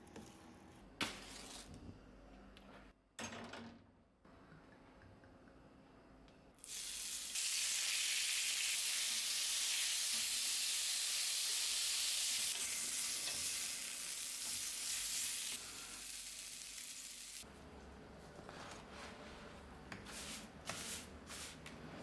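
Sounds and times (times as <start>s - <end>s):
food sizzling in a pan: 6.6s - 17.4s.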